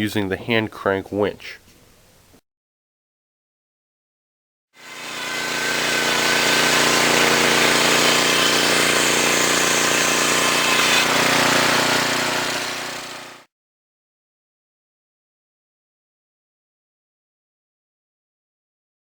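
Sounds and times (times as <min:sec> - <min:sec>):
band sawmill running: 0:04.8 - 0:13.5.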